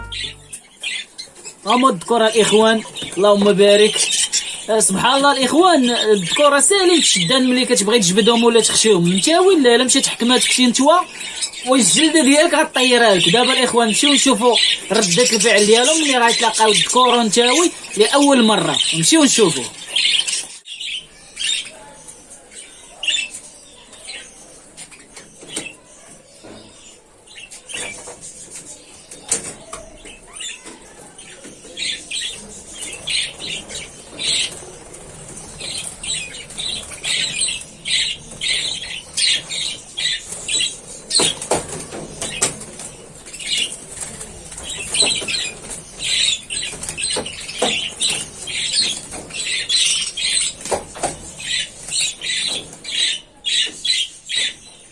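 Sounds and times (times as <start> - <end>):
budgerigars chirping: 0.0 - 25.8, 31.4 - 54.9
wings flapping: 32.4 - 52.9.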